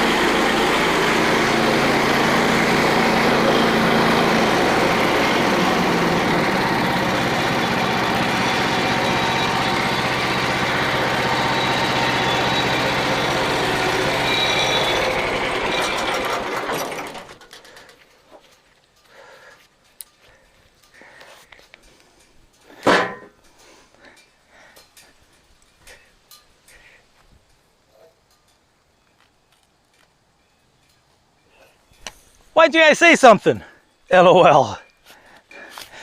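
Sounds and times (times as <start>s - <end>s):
band sawmill running: 0.0s - 18.0s.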